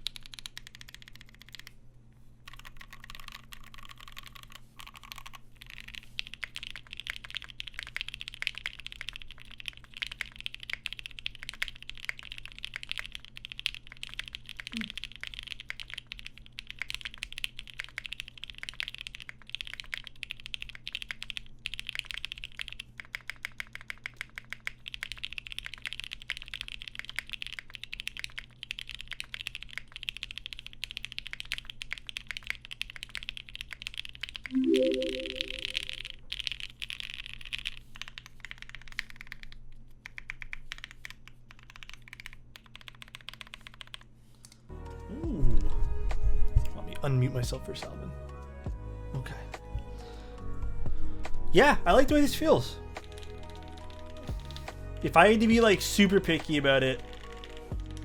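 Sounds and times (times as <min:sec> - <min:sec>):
mechanical keyboard typing: 0:00.0 - 0:01.8, 0:02.5 - 0:44.1, 0:53.0 - 0:54.3.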